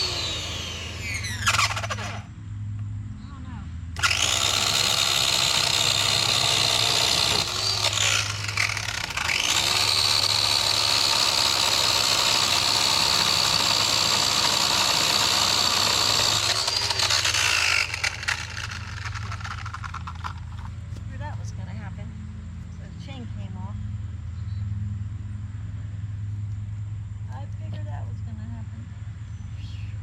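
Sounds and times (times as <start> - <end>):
electric chainsaw motor whine: 0.0 - 2.3, 4.0 - 20.5.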